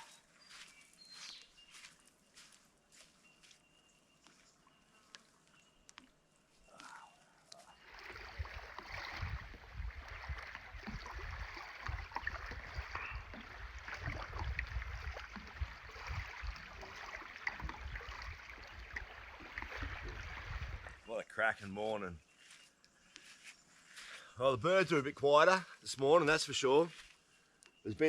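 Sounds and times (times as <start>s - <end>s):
water lapping at shore: 4.3s - 21.1s
wind buffeting microphone: 8.0s - 21.0s.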